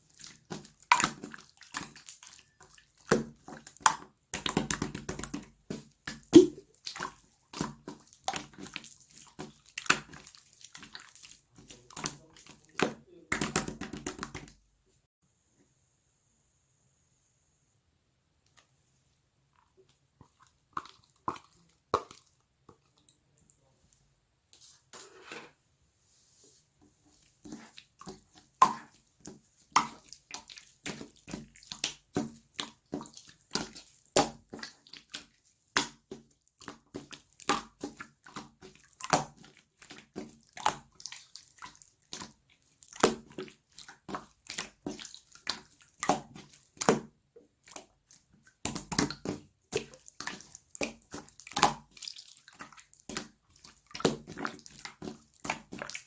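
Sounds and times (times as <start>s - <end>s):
slime squeezed by hand: 6.2s - 6.8s.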